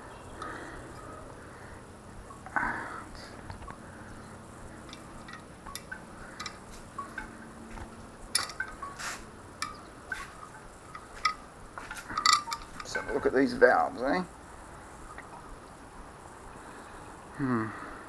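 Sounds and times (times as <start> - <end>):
metal tools and parts clinking: 4.2 - 14.2.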